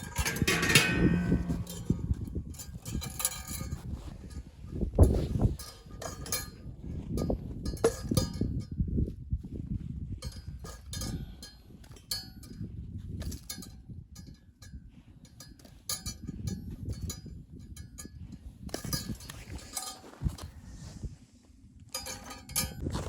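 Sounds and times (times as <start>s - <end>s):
metal objects clinking: 0.0s - 2.1s.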